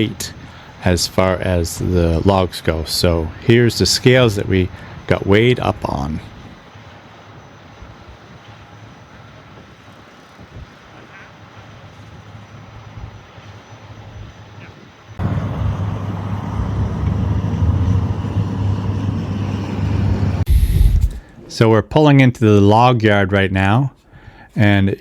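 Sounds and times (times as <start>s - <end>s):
truck engine droning: 15.2s - 21.1s.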